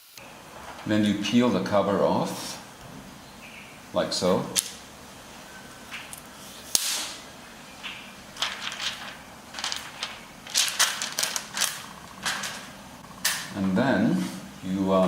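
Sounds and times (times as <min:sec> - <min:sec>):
crackling plastic rustles: 0:00.1 - 0:02.6, 0:07.8 - 0:14.6
sharp snap: 0:06.7 - 0:07.2
plastic film peeling: 0:08.3 - 0:13.6.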